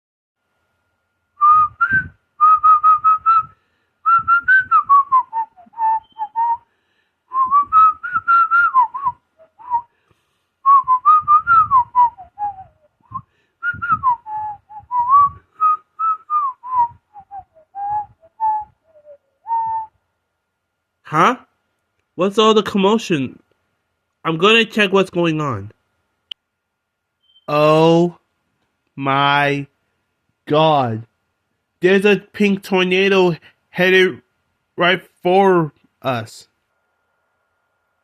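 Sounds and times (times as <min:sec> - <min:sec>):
person whistling a tune: 0:01.4 - 0:06.6, 0:07.3 - 0:09.9, 0:10.6 - 0:19.9.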